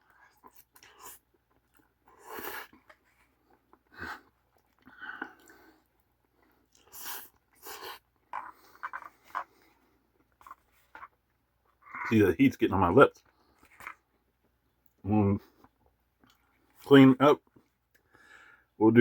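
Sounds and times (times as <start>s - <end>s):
chewing: 0.0s - 12.1s
person slurping noodles: 2.1s - 2.9s, 6.8s - 9.2s
breathing: 3.9s - 6.7s, 8.4s - 10.2s, 18.0s - 18.8s.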